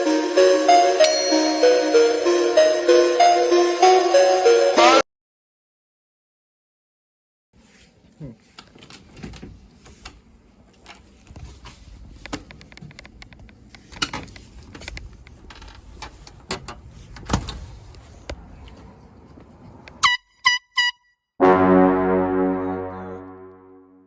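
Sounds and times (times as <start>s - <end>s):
deep buzzy air horn: 21.4s - 24.0s.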